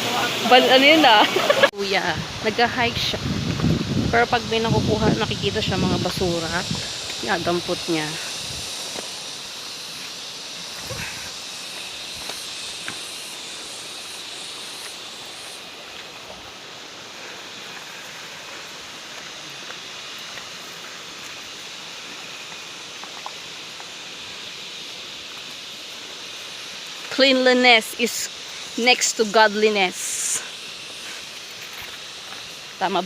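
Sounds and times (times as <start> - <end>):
insects droning: 0.0 - 33.0.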